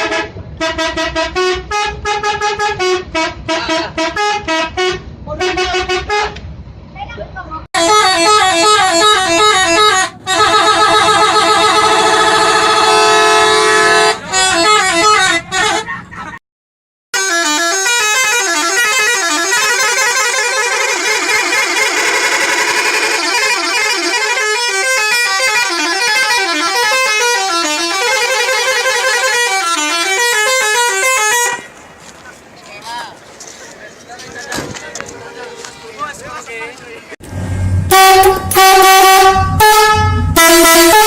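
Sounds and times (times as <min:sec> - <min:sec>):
bus air horn playing a tune: 0:00.0 - 0:06.4, 0:07.8 - 0:16.1, 0:17.2 - 0:31.8, 0:37.8 - 0:41.0.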